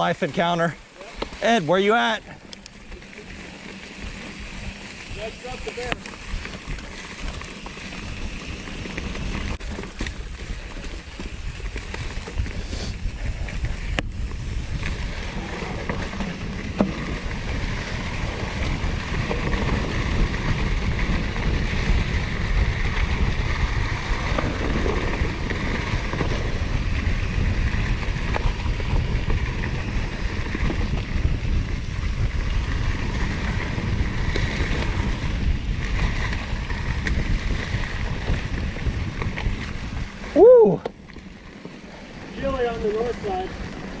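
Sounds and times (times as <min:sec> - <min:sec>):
wind rushing over microphone: 0:00.0 - 0:44.0.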